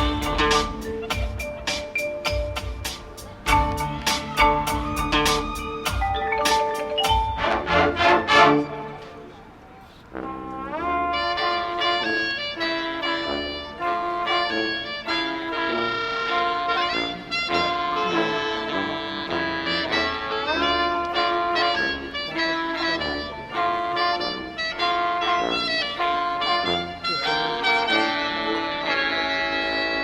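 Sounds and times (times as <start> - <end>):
drum hits: 0.0 - 7.7
marching band playing: 0.0 - 9.2.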